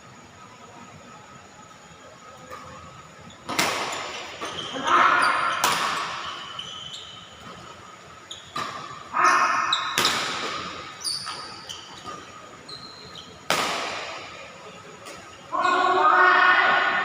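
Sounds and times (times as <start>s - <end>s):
shoes squeaking on court: 2.4s - 14.2s, 15.0s - 16.0s
rackets hitting shuttlecock: 3.4s - 6.6s, 8.5s - 12.2s, 13.4s - 15.3s.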